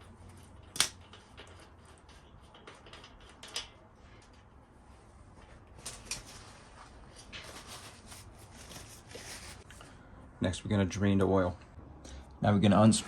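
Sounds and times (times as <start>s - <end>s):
hand tools clicking and scraping: 0.0s - 4.7s.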